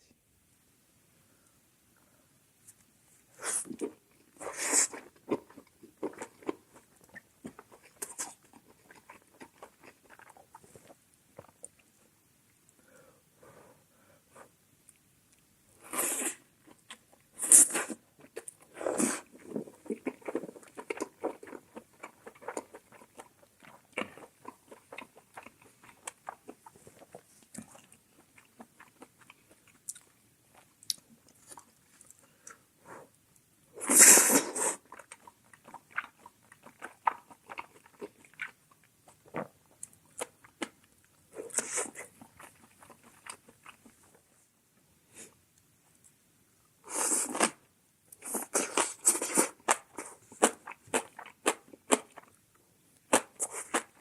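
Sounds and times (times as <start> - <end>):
wet crunchy chewing: 4.9 - 11.8, 18.2 - 32.2, 34.8 - 40.8, 41.4 - 44.1.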